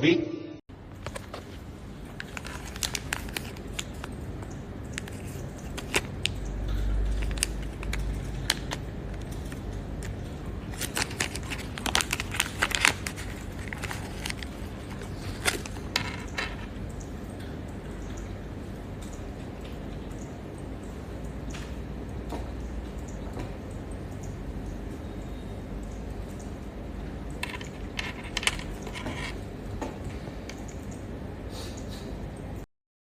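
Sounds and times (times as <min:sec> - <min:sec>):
clicks and rattles of small objects: 0:06.9 - 0:16.7, 0:27.4 - 0:29.4.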